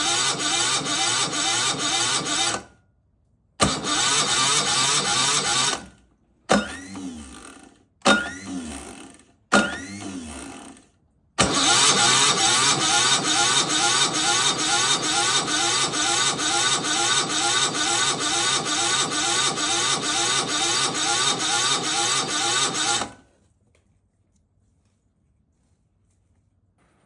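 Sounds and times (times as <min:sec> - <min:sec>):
excavator engine running: 0:11.4 - 0:23.1.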